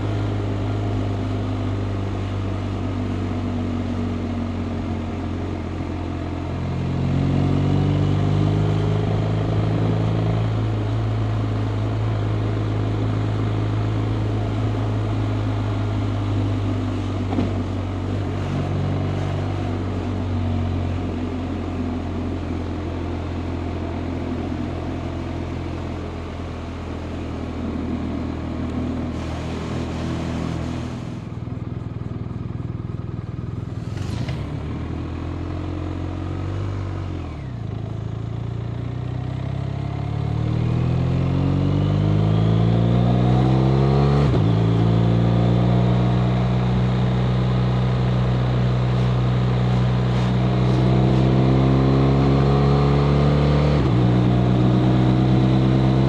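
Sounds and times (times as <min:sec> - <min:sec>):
motorcycle engine running: 0:12.4 - 0:40.3.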